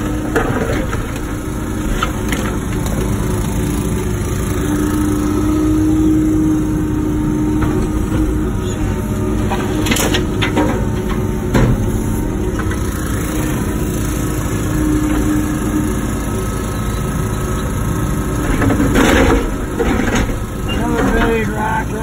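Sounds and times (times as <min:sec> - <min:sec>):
excavator diesel engine running: 0:00.0 - 0:22.0
sharp knocks and clanks: 0:09.4 - 0:12.0, 0:18.4 - 0:21.5.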